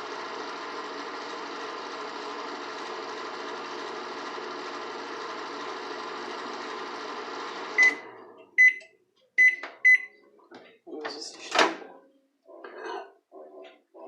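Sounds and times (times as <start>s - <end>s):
microwave oven humming: 0.0s - 8.8s.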